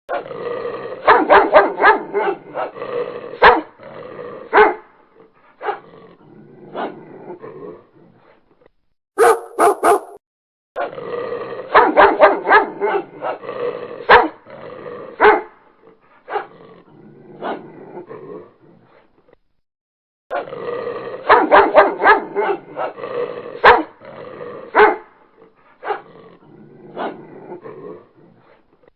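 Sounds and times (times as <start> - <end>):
dog barking: 1.0 - 2.8, 3.4 - 3.7, 4.5 - 4.9, 5.6 - 5.8, 9.2 - 10.2, 11.7 - 13.4, 14.0 - 14.4, 15.2 - 15.6, 16.3 - 16.5, 21.3 - 23.0, 23.6 - 24.0, 24.7 - 25.2, 25.8 - 26.0.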